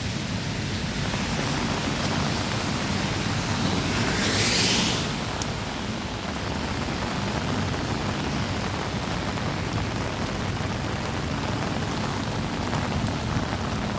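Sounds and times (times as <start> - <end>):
torrential rain pouring: 0.0 - 13.9.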